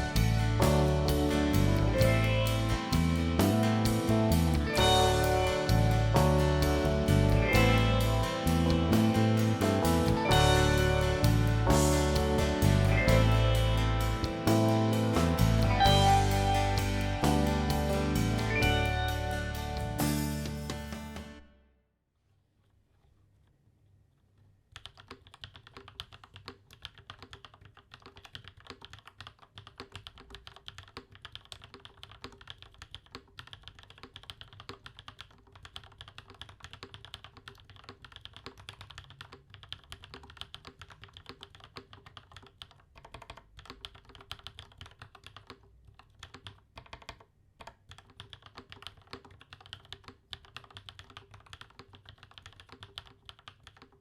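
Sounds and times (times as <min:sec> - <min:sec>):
typing on mechanical keyboard: 0:24.7 - 0:54.0.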